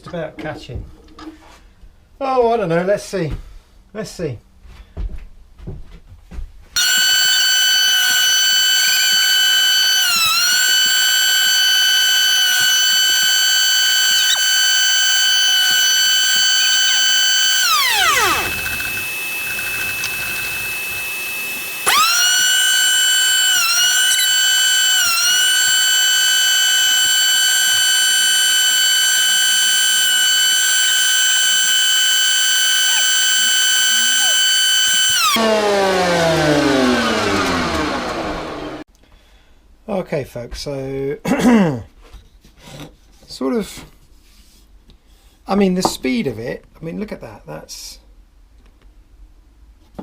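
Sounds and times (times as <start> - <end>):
planer motor whining: 6.8 - 38.8.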